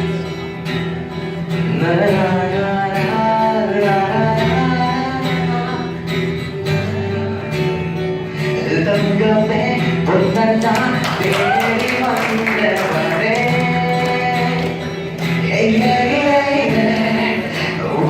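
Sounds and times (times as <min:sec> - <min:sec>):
guitar strumming chords: 0:00.0 - 0:18.0
person singing: 0:08.3 - 0:18.0.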